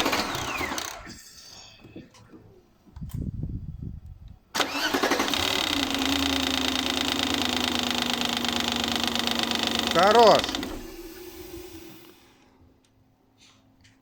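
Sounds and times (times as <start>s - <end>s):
car engine starting and idling: 0.0s - 1.2s, 4.6s - 12.4s.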